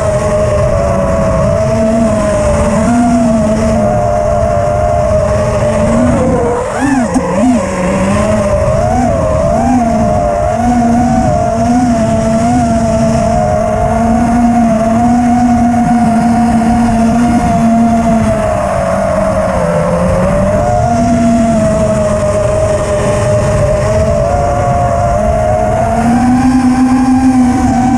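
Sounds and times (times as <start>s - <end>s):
drone motors whining: 0.0s - 27.9s.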